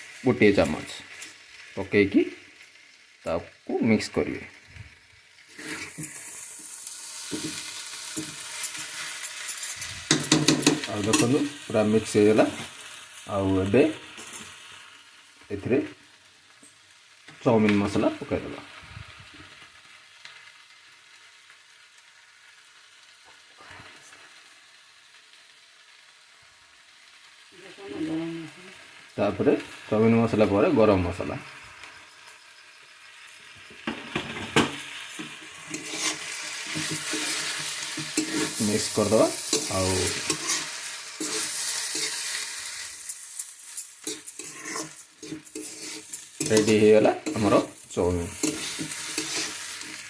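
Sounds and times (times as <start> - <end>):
noodles sizzling in a pan: 0.0 - 50.0
spoon scraping a pan: 5.5 - 11.5, 33.8 - 50.0.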